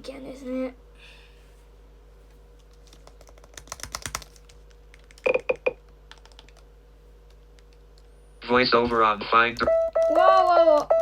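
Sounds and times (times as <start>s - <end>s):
computer keyboard typing: 2.6s - 6.7s.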